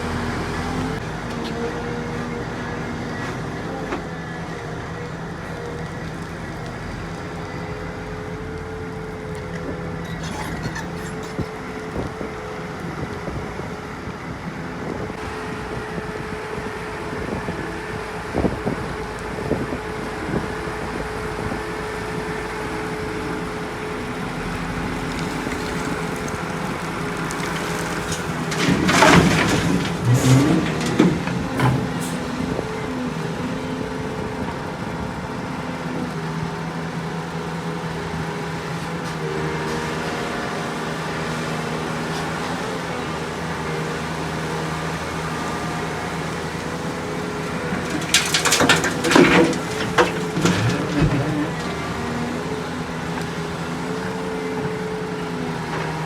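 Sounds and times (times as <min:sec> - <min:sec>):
diesel engines of heavy machinery: 0:00.0 - 0:56.0
clattering and knocks: 0:27.4 - 0:32.2, 0:47.7 - 0:51.8.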